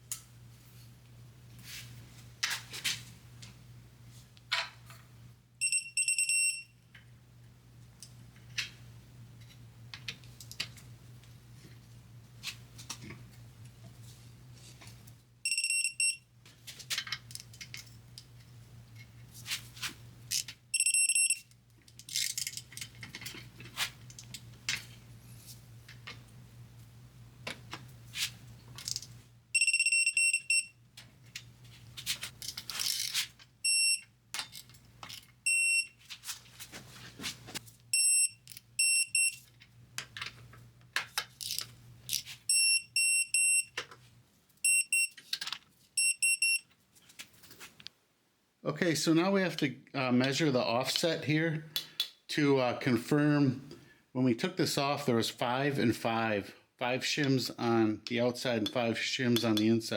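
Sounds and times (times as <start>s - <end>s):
rapid high beeps: 15.5s - 16.2s, 20.8s - 21.4s, 29.6s - 30.7s, 44.7s - 45.1s, 46.0s - 46.6s.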